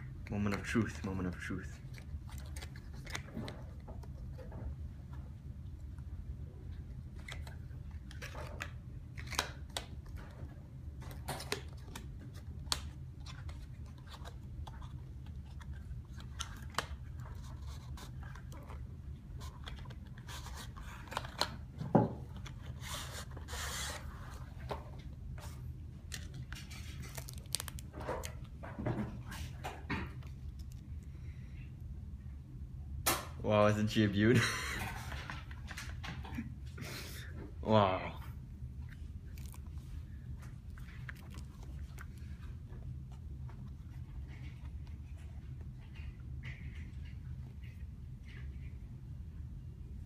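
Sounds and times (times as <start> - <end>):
steady low hum: 0.0 - 50.0
packaging clicks and scrapes: 26.1 - 28.4.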